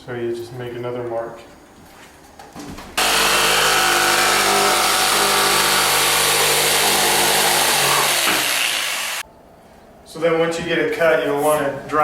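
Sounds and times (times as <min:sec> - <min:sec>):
power saw cutting: 0:03.0 - 0:09.2.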